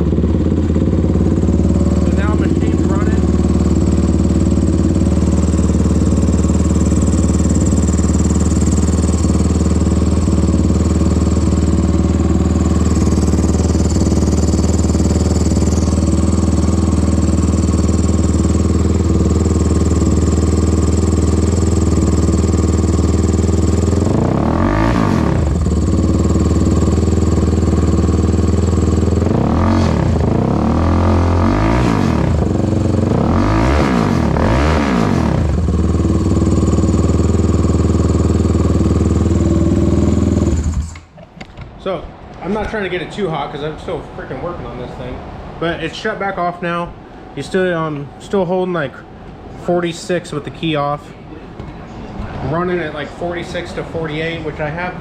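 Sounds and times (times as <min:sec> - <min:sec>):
quad engine idling and revving: 0:00.0 - 0:41.0.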